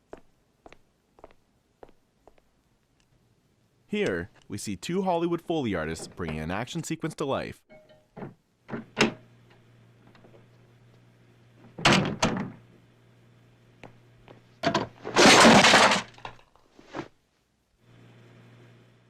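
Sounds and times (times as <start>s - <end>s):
faint low hum: 0.0s - 19.0s
crash of something breaking: 15.0s - 16.4s.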